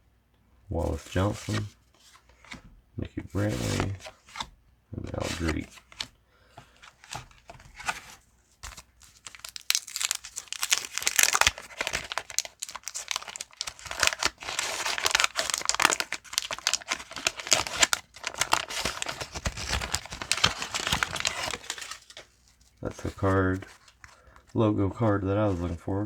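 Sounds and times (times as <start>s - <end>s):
paper crinkling: 6.7s - 26.0s
wax paper wrapper tearing: 9.0s - 22.2s.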